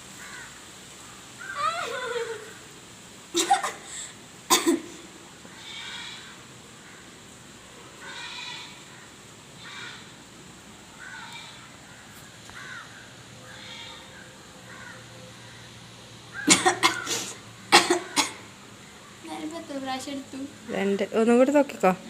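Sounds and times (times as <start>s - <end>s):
crows cawing: 0.1s - 1.8s, 5.4s - 7.4s, 8.0s - 10.3s, 10.9s - 19.1s.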